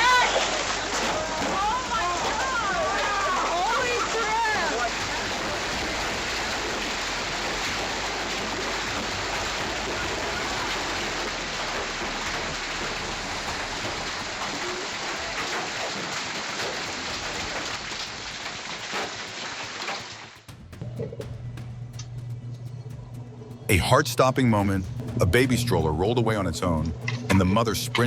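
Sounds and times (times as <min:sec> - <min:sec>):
hail and rain pelting down: 0:00.0 - 0:21.7.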